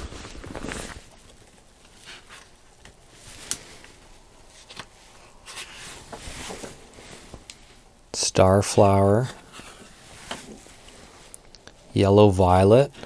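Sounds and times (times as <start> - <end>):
paper pages rustling: 0.0 - 7.5.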